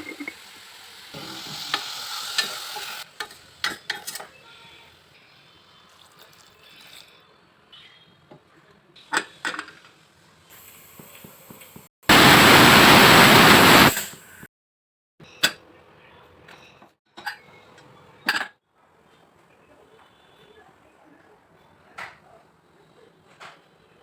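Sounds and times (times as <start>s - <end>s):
loud sizzling hiss: 0.0s - 3.2s, 10.6s - 14.4s.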